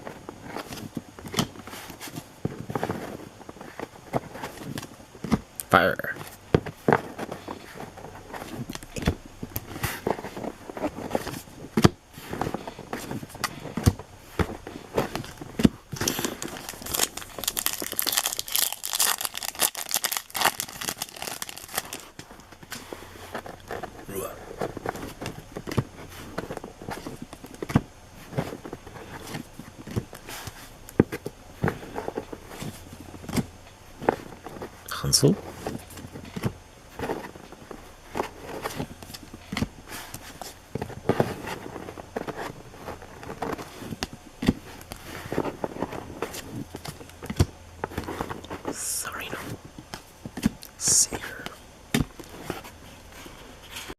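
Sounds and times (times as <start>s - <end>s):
foil wrapper crinkling: 15.2s - 22.6s.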